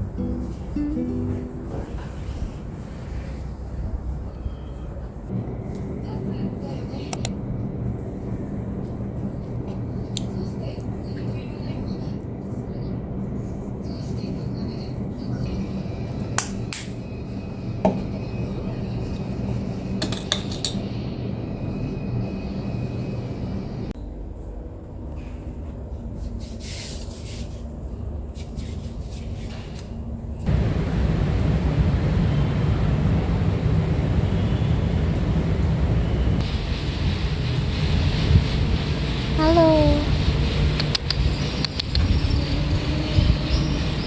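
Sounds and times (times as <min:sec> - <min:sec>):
steady low hum: 0:30.0 - 0:44.0
low rumbling noise: 0:30.4 - 0:44.0
bright hiss: 0:36.4 - 0:41.7.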